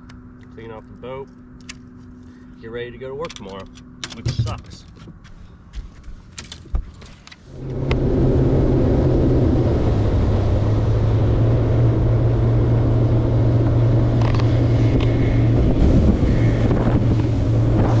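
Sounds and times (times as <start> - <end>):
boat motor running: 7.5 - 18.0
wind noise on microphone: 7.6 - 18.0.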